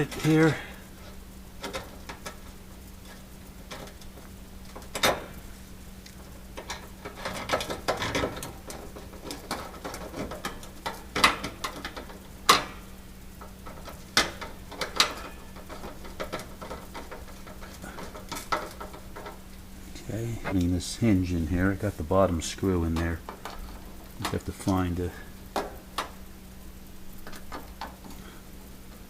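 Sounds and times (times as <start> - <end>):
metal clicks knocks and scrapes: 6.1 - 19.5.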